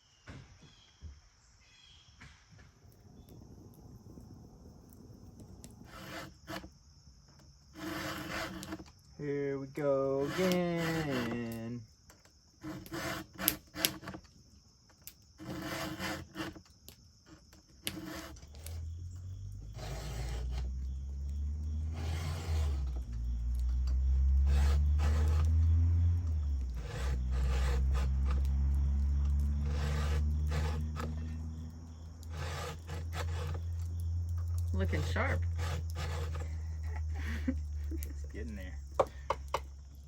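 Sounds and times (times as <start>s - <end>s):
file rasping on chainsaw chain: 5.8s - 6.7s, 7.7s - 8.9s, 9.8s - 11.7s, 12.6s - 14.2s, 15.4s - 16.7s, 17.3s - 18.9s, 19.6s - 34.0s, 34.6s - 37.5s.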